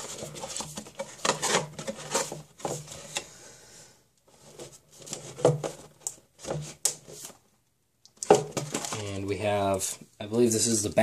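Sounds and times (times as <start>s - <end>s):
packaging rustling: 0.0s - 3.1s, 8.2s - 9.2s.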